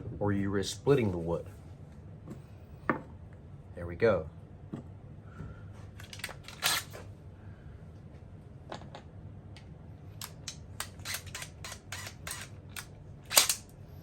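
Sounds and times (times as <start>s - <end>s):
small tools clicking and knocking: 10.2s - 13.7s.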